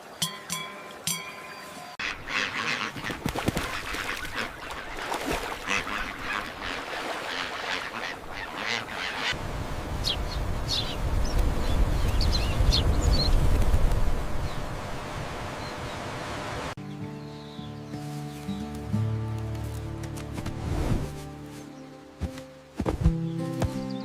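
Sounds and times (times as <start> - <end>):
birds calling: 0.0 - 9.4, 10.0 - 13.6, 16.8 - 19.9, 21.4 - 24.0.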